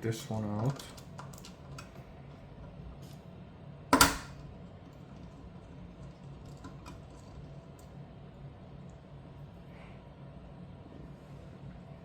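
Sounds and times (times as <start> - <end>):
hardware put down with a clack: 4.0 - 4.4.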